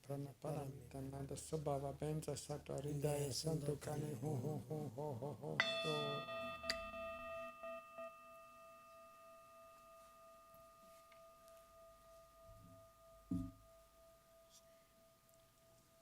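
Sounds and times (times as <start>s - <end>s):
singing bowl ringing: 5.6s - 16.0s
short low thump: 13.3s - 13.6s.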